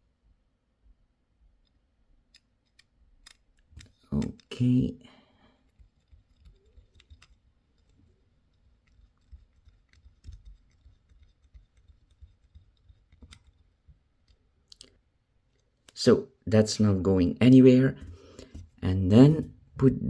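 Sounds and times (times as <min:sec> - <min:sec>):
small clicks and knocks: 0:01.6 - 0:04.7, 0:05.6 - 0:16.0.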